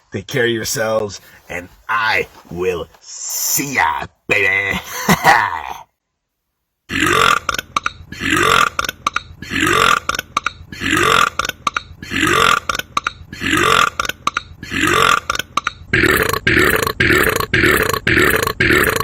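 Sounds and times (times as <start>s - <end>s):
burp: 6.9s - 19.0s.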